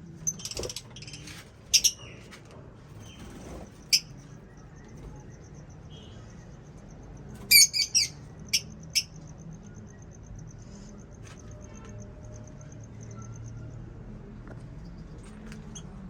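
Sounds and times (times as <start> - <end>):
lovebirds chirping: 0.2 - 2.2, 7.5 - 9.1.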